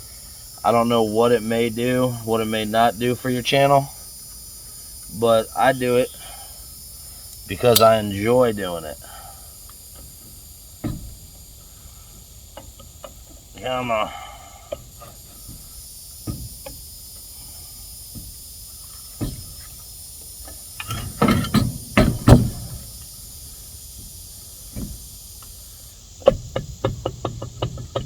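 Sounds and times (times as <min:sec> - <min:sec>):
metal tools knocking and scraping: 0:07.6 - 0:08.1, 0:20.8 - 0:22.4.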